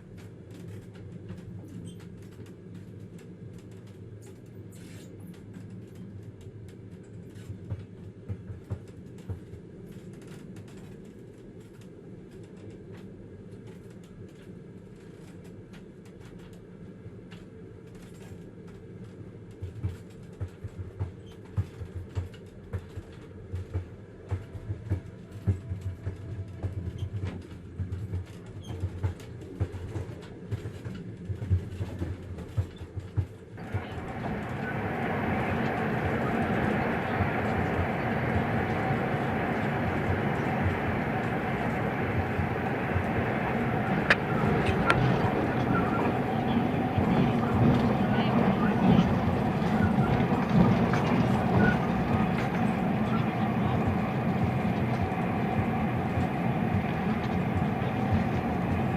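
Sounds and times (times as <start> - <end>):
train rumbling: 0.0 - 58.9
wheels clicking and knocking: 19.6 - 58.9.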